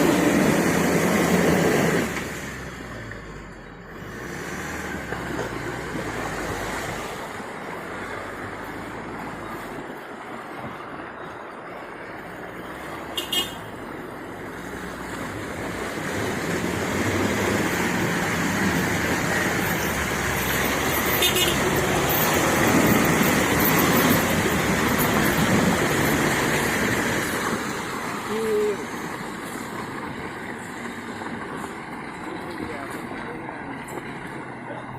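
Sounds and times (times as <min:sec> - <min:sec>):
pickup truck driving off-road: 0:00.0 - 0:34.9.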